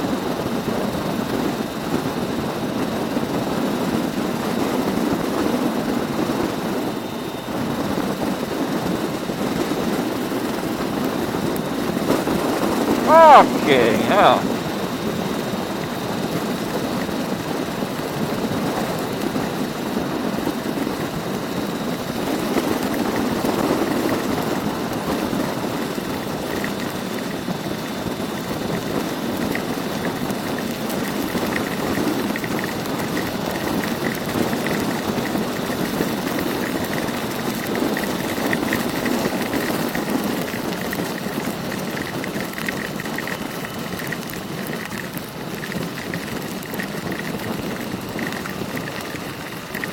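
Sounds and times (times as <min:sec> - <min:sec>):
heavy rain: 0:13.1 - 0:14.4.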